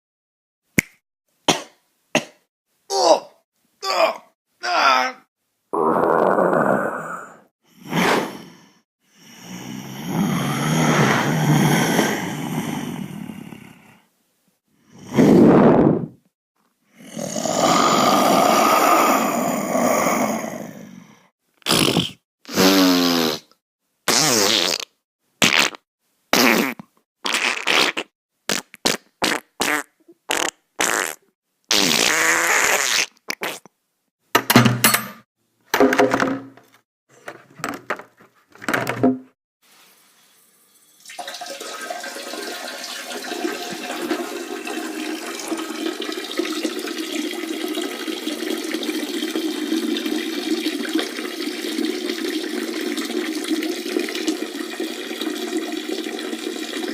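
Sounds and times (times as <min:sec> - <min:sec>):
fart sound effects: 0:10.2 - 0:12.0, 0:15.2 - 0:16.2, 0:21.6 - 0:25.8, 0:26.4 - 0:33.7
running water: 0:39.7 - 0:56.9.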